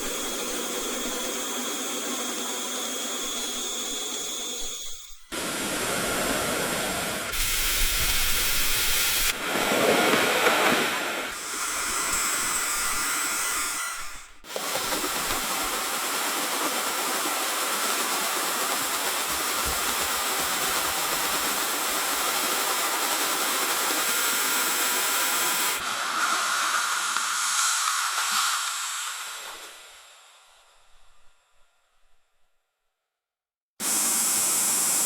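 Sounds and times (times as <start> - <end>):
shower running: 5.3 - 29.8.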